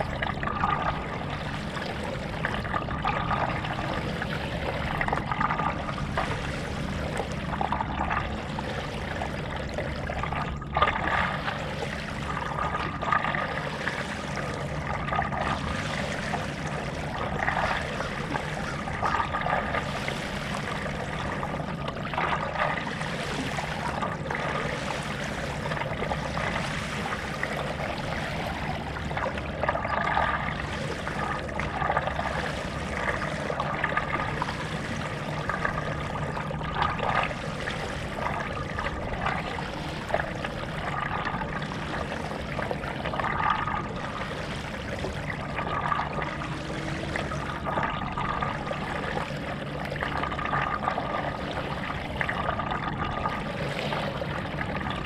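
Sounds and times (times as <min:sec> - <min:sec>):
low rush of water: 0:00.0 - 0:55.0
paddle splashing in water: 0:00.0 - 0:55.0.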